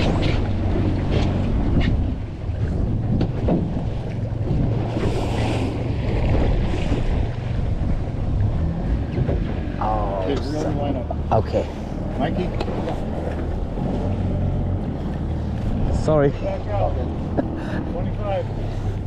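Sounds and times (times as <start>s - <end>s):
wind buffeting microphone: 0.0s - 9.8s
boat motor running: 0.0s - 19.0s.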